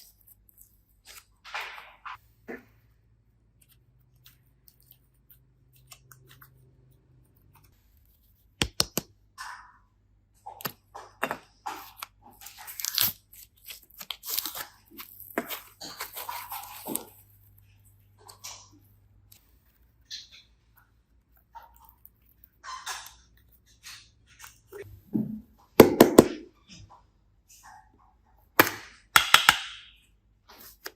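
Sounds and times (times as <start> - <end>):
crackling and tearing by hand: 0.0 - 1.9, 3.5 - 9.0, 11.6 - 20.0.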